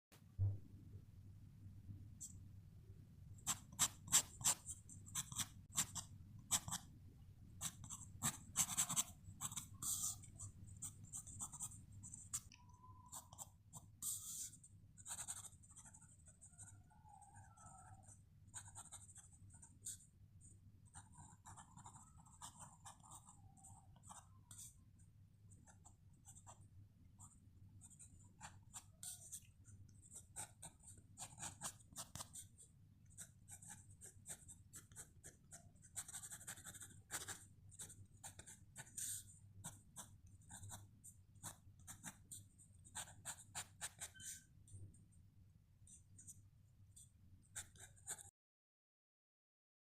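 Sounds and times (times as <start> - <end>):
pencil sketching on paper: 7.6 - 20.1, 20.9 - 24.8, 30.2 - 44.5.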